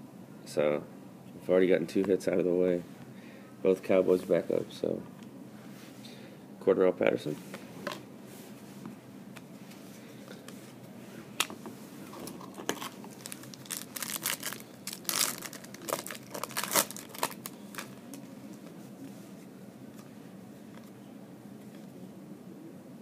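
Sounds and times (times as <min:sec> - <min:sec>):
foil wrapper crinkling and tearing: 0:12.5 - 0:18.2.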